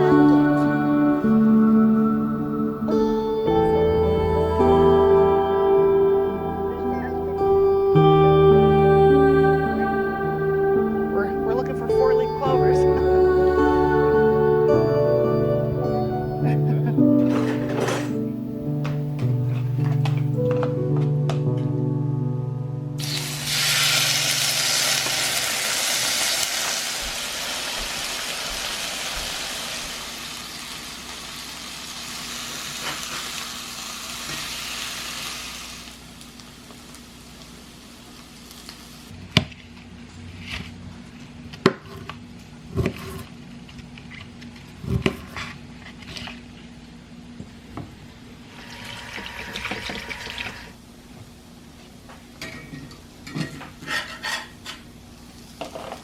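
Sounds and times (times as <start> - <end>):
utensils and dishes clinking: 16.8 - 18.4, 52.4 - 54.8
steady hiss: 23.0 - 39.1.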